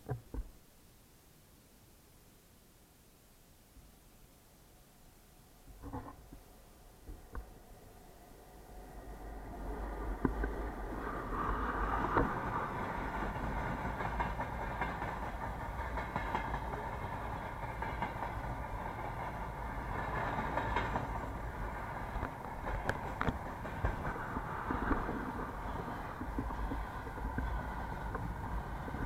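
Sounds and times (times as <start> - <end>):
freight train rolling past: 6.6 - 29.0.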